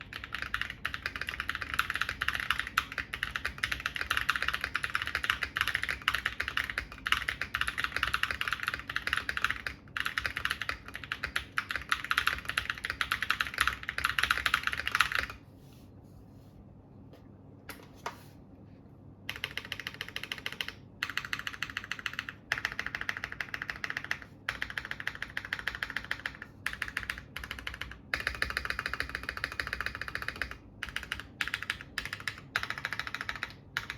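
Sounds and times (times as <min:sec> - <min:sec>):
typing on mechanical keyboard: 0:00.0 - 0:15.4, 0:19.3 - 0:33.9.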